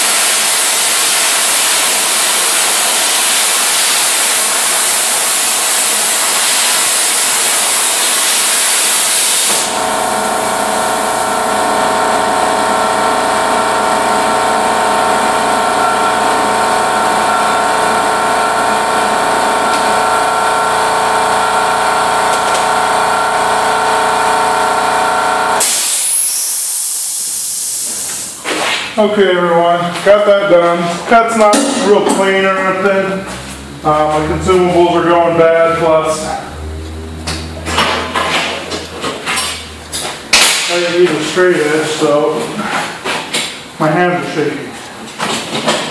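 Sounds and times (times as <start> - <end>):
plasma cutter hissing: 0.0 - 11.4, 25.6 - 28.4
multi-tone hum: 8.0 - 26.6, 27.8 - 45.7.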